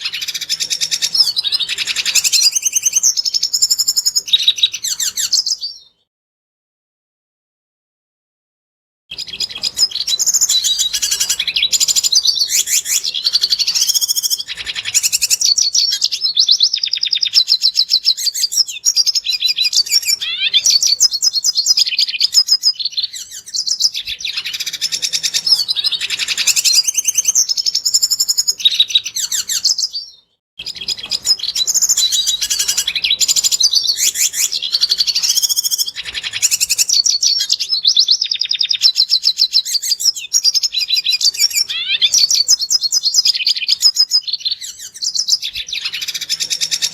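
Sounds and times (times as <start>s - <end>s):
bird twittering song: 0.0s - 6.1s, 9.1s - 46.9s.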